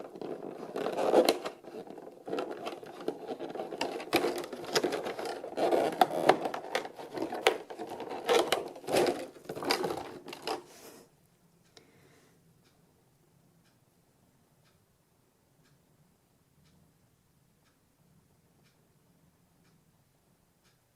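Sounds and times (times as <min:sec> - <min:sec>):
packaging clicks and rustles: 0:00.0 - 0:10.8.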